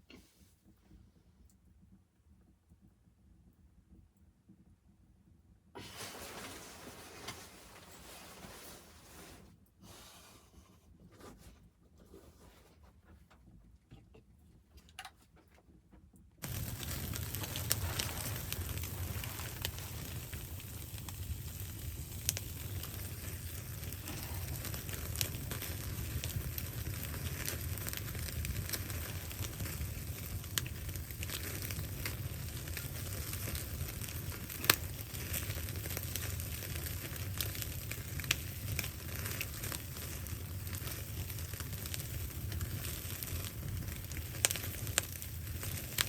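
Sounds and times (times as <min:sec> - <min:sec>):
wood fire crackling: 0:05.8 - 0:09.8, 0:16.2 - 0:46.0.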